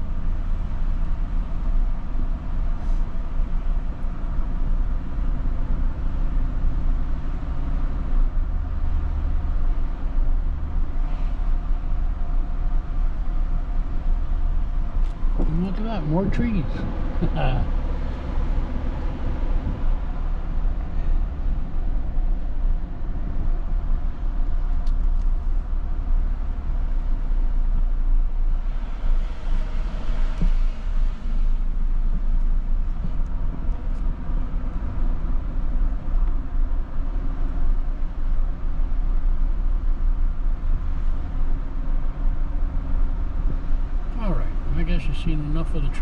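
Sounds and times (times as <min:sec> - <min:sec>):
car engine and road rumble: 0:00.0 - 0:46.0.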